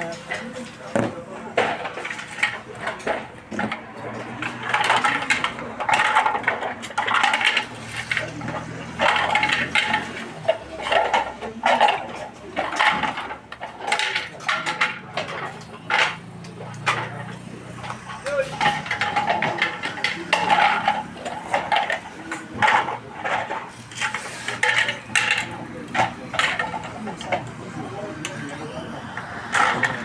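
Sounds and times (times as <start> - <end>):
small hard objects clattering: 0.0 - 30.0.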